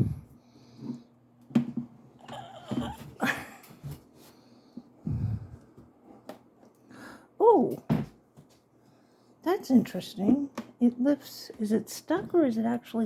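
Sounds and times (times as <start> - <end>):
person breathing: 0.0 - 1.1, 4.2 - 5.7, 6.8 - 7.4.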